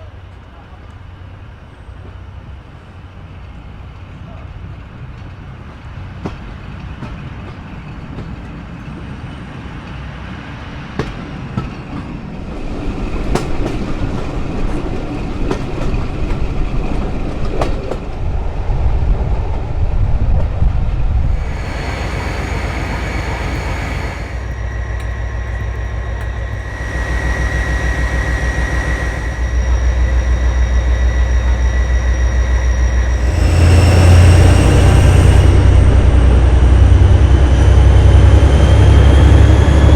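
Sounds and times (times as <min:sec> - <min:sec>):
diesel locomotive engine working: 0:00.0 - 0:39.9
wheels clicking over rail joints: 0:11.0 - 0:18.2
high steady whistling tones: 0:21.1 - 0:36.9.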